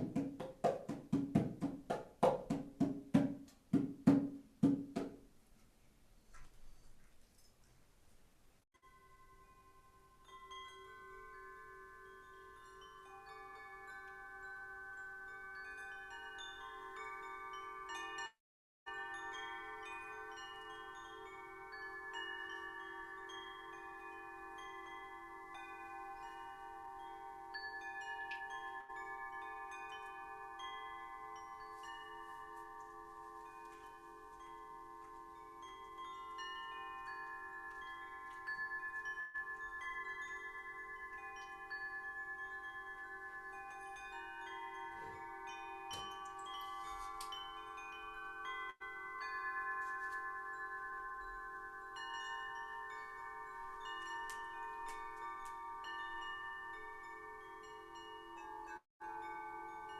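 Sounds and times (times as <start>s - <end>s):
wind chimes ringing: 8.8s - 59.9s.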